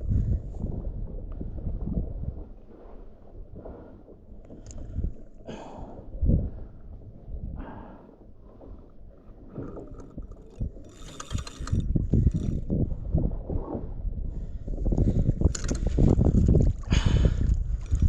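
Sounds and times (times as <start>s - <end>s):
wind and water buffeting: 0.0s - 18.0s
gear clattering and ratcheting: 9.8s - 12.6s, 15.4s - 16.3s.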